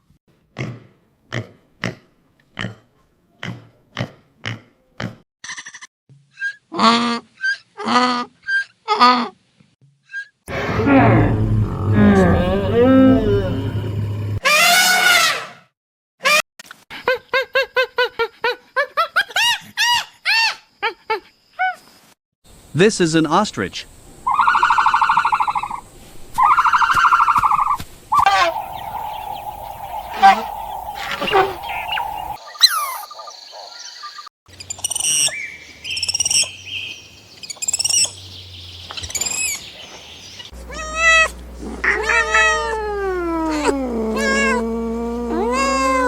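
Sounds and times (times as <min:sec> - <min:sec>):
long wavering calls: 0:24.3 - 0:25.8, 0:28.2 - 0:46.0
short animal calls: 0:28.2 - 0:33.0, 0:40.6 - 0:46.0
high chirping calls: 0:28.2 - 0:40.9.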